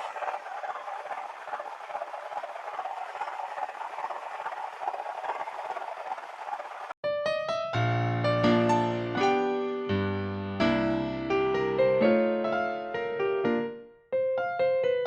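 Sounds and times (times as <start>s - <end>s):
piano music: 7.0s - 15.0s.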